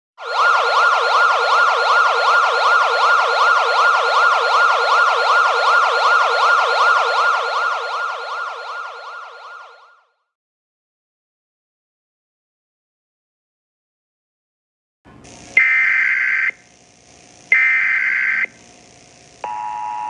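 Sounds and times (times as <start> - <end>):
siren warbling fast: 0.2 - 10.1.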